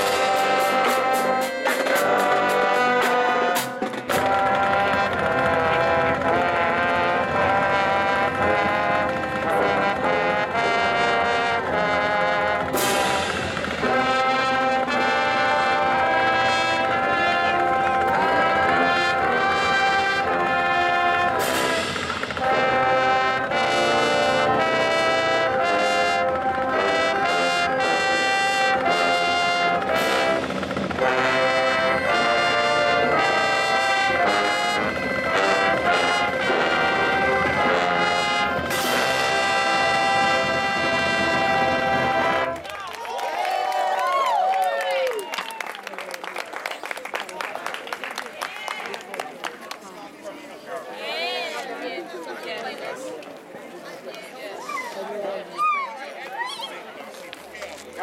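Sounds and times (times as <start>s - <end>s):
marching band brass playing: 0.0s - 42.7s
drums: 0.0s - 43.0s.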